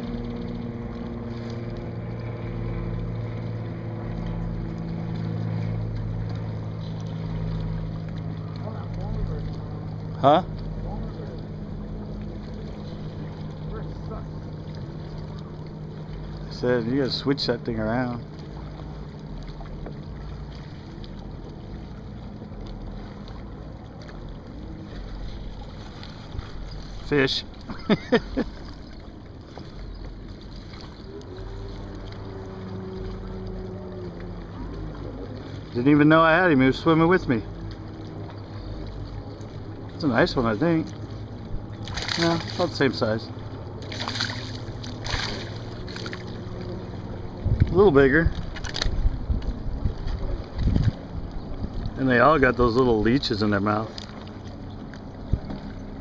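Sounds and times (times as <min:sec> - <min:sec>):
boat motor running: 0:00.0 - 0:56.0
wind on microphone: 0:47.3 - 0:52.0.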